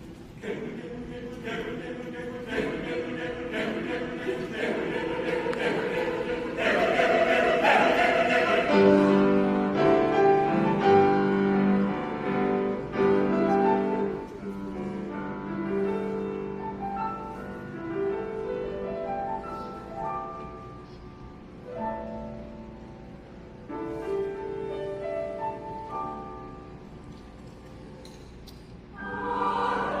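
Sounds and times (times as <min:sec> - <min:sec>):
mixed choir singing: 0:00.2 - 0:14.3, 0:28.9 - 0:30.0
piano accompaniment: 0:02.6 - 0:27.1.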